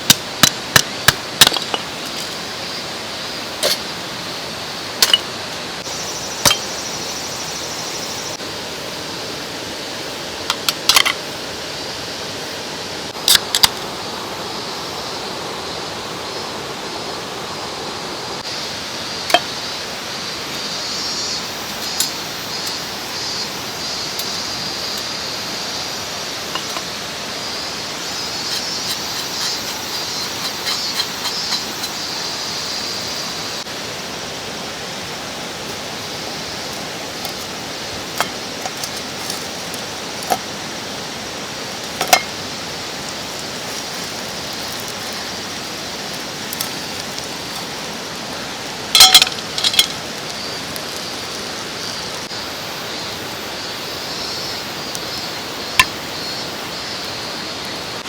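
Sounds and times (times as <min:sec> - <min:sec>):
mountain stream rushing: 0:00.0 - 0:58.0.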